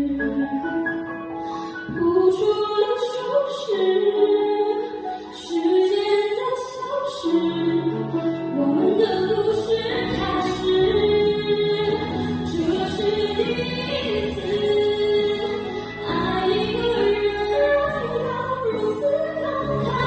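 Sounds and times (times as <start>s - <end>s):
backing music: 7.6s - 20.0s.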